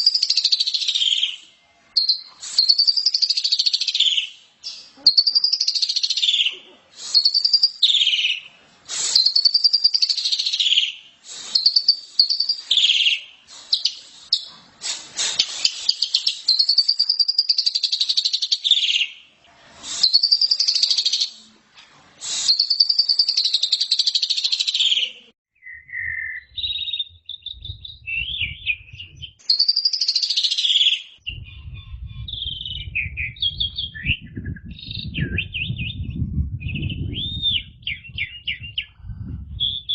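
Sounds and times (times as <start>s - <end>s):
starling singing: 2.0s - 14.5s, 22.4s - 39.0s
low hum: 26.6s - 29.4s, 31.2s - 39.9s.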